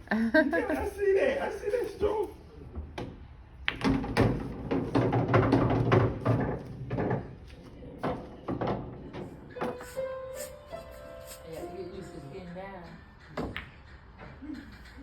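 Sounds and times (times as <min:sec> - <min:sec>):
balls rolling on table: 0:02.8 - 0:09.8
pool balls clacking: 0:02.8 - 0:09.8, 0:13.0 - 0:14.8.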